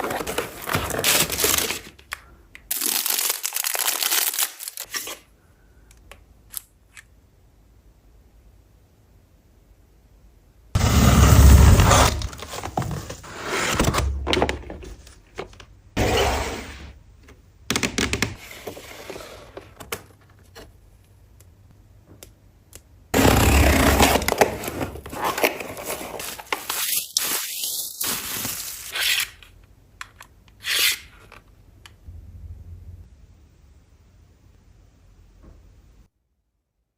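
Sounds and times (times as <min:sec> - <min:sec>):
packaging rustling and crinkling: 0:00.0 - 0:05.0, 0:23.9 - 0:28.9.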